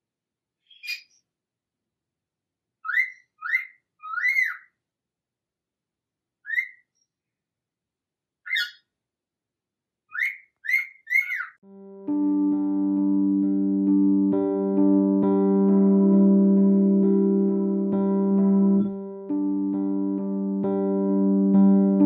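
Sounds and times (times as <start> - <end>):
parrot whistled chirps: 2.8 - 4.7, 6.4 - 6.9, 10.1 - 11.6.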